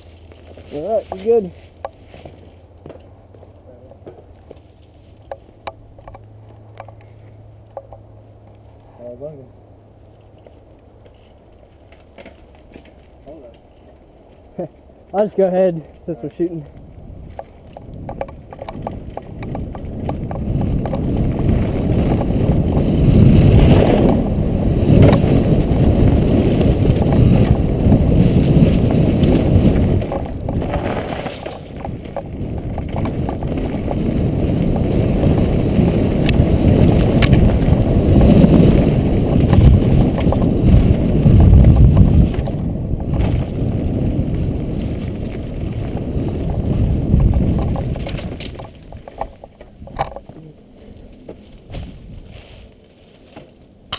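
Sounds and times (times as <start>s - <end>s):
bike tyres rushing over dirt: 0.0s - 5.6s, 10.1s - 53.9s
wind buffeting microphone: 15.2s - 52.7s.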